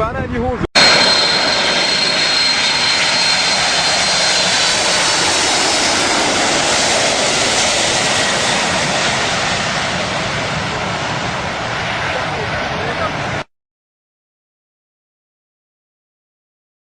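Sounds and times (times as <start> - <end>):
faint high whine: 0.8 - 11.0
jet engines roaring: 0.8 - 13.5.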